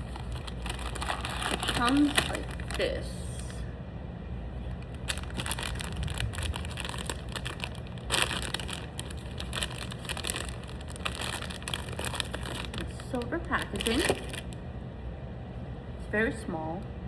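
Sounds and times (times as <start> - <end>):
foil wrapper crinkling: 0.0 - 3.0, 4.7 - 14.6.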